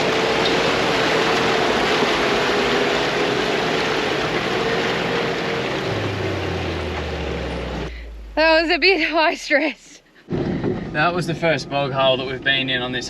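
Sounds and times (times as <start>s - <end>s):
engine running under load: 0.0s - 9.3s
water and mud rushing: 0.0s - 9.4s.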